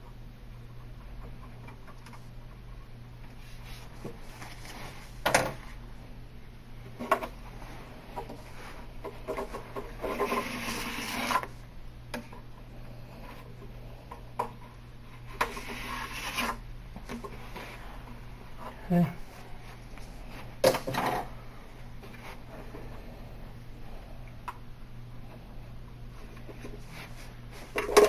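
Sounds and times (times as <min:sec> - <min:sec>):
low steady hum: 0:00.0 - 0:28.0
knife scraping plastic: 0:09.2 - 0:11.5, 0:15.3 - 0:17.3.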